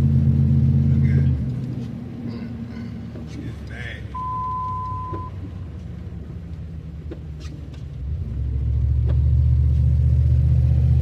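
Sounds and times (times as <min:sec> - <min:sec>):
truck engine and road noise: 0:00.0 - 0:11.0
high beep: 0:04.2 - 0:05.4.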